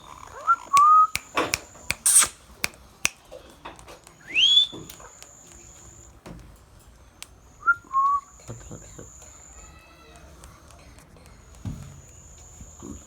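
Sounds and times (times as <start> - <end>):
parakeet squawks: 0.2 - 2.4
sharp bird clicks: 0.7 - 3.2
rising whistled bird call: 1.9 - 2.4, 4.2 - 4.9.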